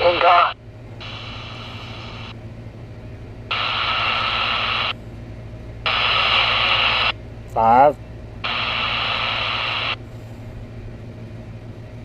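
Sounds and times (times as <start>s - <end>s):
radio static hiss: 0.0s - 2.4s, 3.5s - 5.0s, 5.9s - 10.0s
steady low hum: 0.0s - 12.0s.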